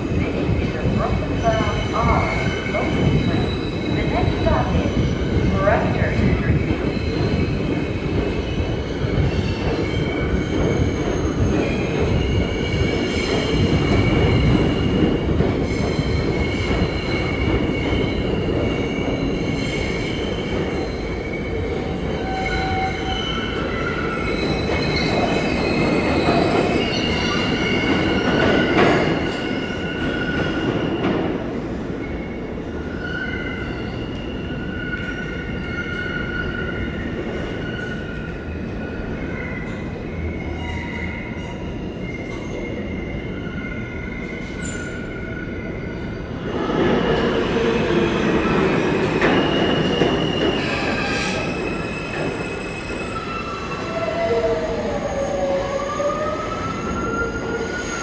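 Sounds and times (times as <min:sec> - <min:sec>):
subway train rumbling on rails: 0:00.0 - 0:58.0
steel wheels squealing: 0:15.6 - 0:31.0, 0:41.9 - 0:58.0.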